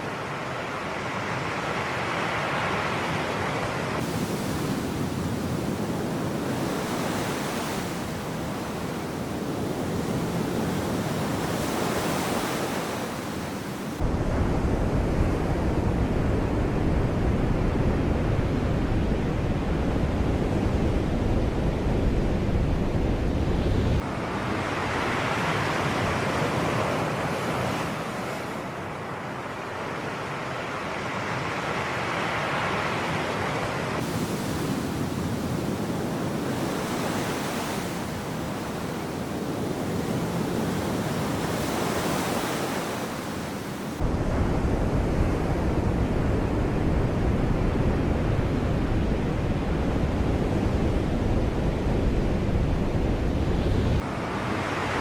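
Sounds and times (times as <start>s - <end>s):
wind on microphone: 4.0s - 24.1s, 34.0s - 55.0s
sea surf breaking: 33.8s - 44.8s.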